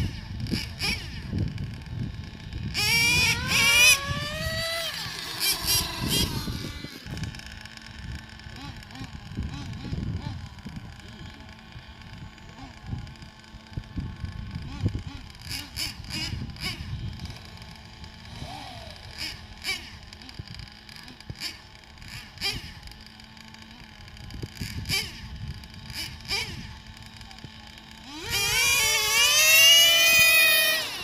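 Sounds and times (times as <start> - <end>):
remote-control car motor whine: 0.0 - 31.0.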